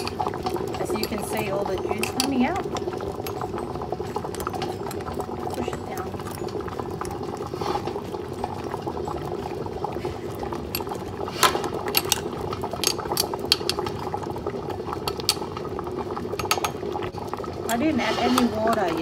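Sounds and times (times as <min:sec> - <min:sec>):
clinks against a glass jar: 0:00.0 - 0:07.1
water simmering in a pot: 0:00.0 - 0:19.0.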